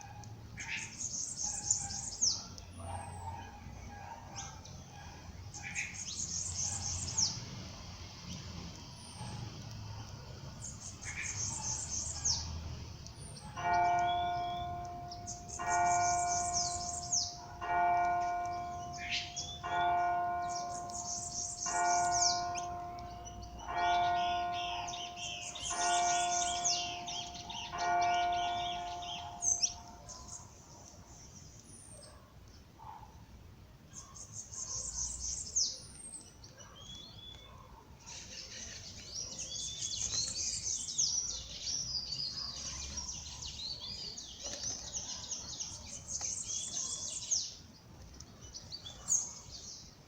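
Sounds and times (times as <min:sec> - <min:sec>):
small birds chirping: 0:00.0 - 0:50.0
bell tolling: 0:13.6 - 0:29.8.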